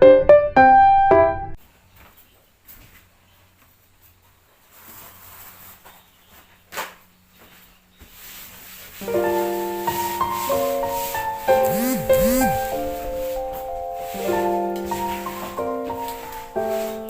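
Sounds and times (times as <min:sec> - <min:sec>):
keyboard chords: 0:00.0 - 0:01.6, 0:11.5 - 0:13.7.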